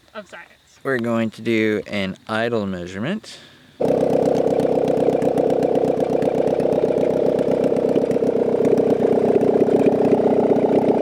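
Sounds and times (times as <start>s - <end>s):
car engine idling loud putter: 3.8s - 11.0s.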